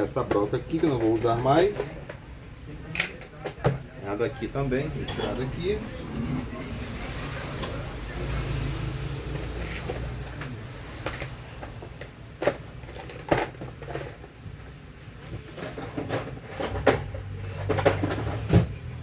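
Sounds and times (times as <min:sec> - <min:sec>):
metal tools clinking: 0:02.9 - 0:03.3, 0:05.0 - 0:06.5, 0:09.6 - 0:11.6, 0:12.4 - 0:14.8, 0:15.5 - 0:18.8.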